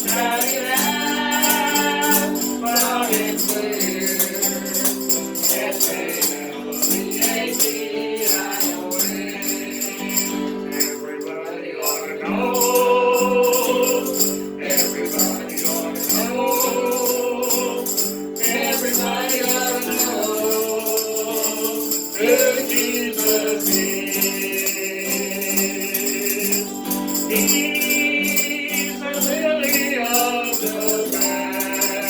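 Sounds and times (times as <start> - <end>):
steady percussion beat: 0.0 - 11.0
gospel singing: 0.0 - 32.0
instrumental accompaniment: 0.0 - 32.0.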